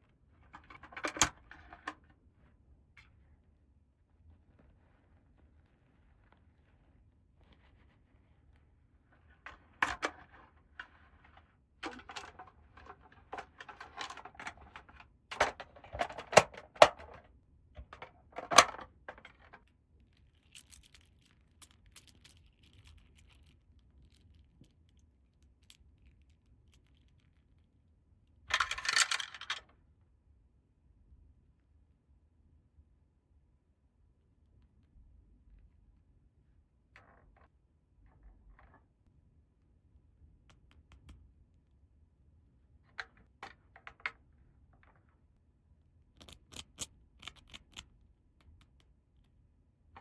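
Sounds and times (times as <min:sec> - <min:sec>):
plastic toy pieces clicking: 0:28.5 - 0:29.6.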